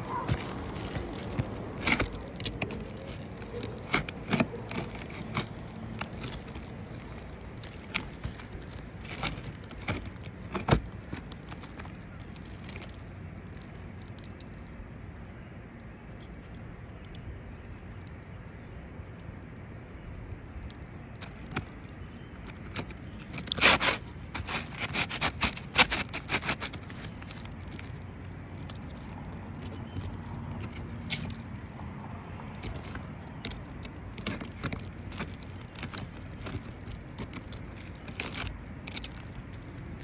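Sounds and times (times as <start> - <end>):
scraping on roof shingles: 0.0 - 13.0, 22.4 - 31.4, 32.3 - 40.0.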